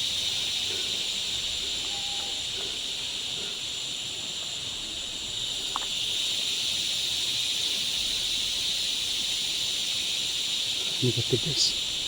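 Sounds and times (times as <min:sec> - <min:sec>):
shrill insect chorus: 0:00.0 - 0:12.0.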